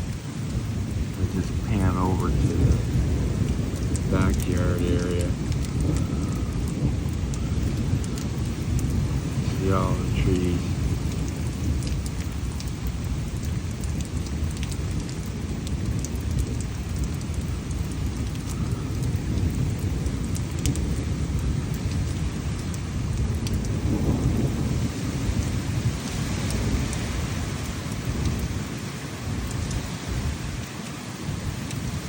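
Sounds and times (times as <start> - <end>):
low rumble of thunder: 0.0 - 32.0
steady haze of noise: 1.1 - 13.1.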